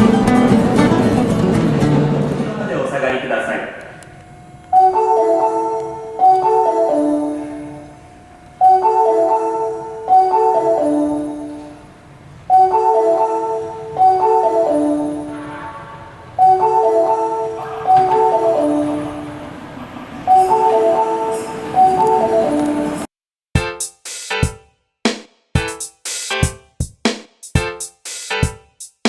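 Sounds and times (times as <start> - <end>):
marimba-like chime melody: 4.8 - 7.6, 8.6 - 11.6, 16.4 - 19.4
rising rushing noise: 16.0 - 23.1.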